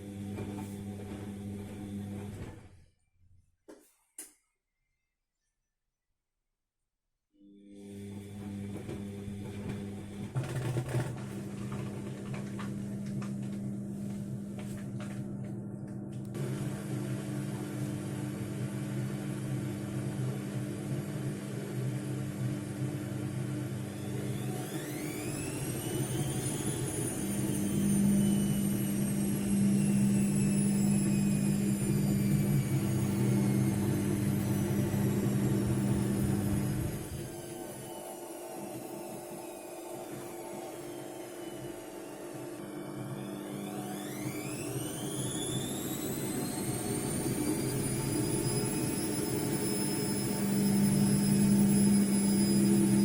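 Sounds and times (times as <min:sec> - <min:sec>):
washing machine motor whine: 0:00.0 - 0:02.9, 0:07.4 - 0:53.0.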